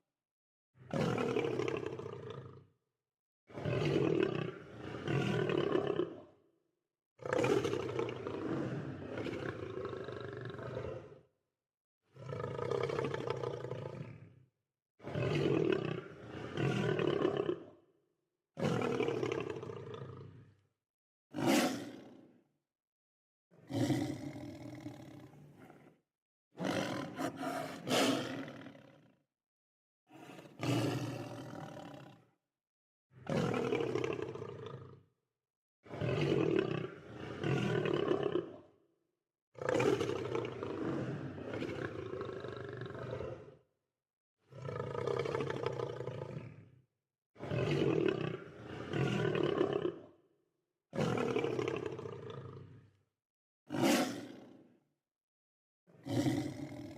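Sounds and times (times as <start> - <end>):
lion roaring and growling: 26.6 - 29.0, 56.0 - 56.9.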